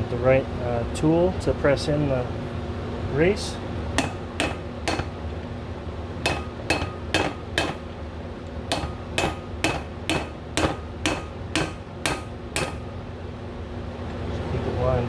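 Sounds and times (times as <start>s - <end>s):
hammer striking metal tool: 4.0s - 5.2s, 6.2s - 7.9s, 8.7s - 13.0s.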